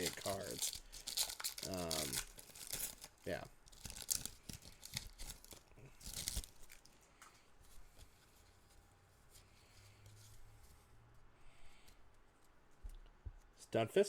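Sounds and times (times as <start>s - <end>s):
foil wrapper ripping: 0.0s - 6.9s
foil wrapper crinkling: 0.0s - 7.0s.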